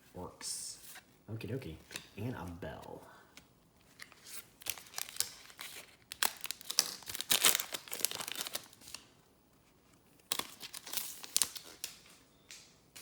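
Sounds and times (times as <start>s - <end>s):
wrapper tearing and crinkling: 4.0s - 9.1s, 10.3s - 12.1s.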